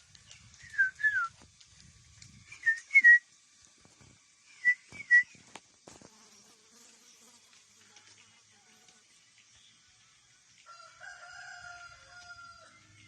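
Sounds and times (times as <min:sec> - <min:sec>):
bird singing whistled notes: 0:00.6 - 0:01.4, 0:02.4 - 0:03.2, 0:04.5 - 0:05.5.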